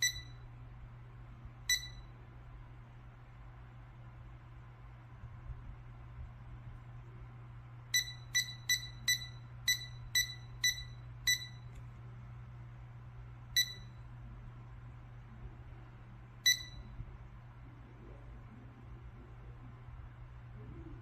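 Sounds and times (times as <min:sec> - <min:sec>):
short high electronic beeps: 0:00.0 - 0:00.4, 0:08.0 - 0:11.7, 0:13.6 - 0:14.0
low steady hum: 0:00.0 - 0:21.0.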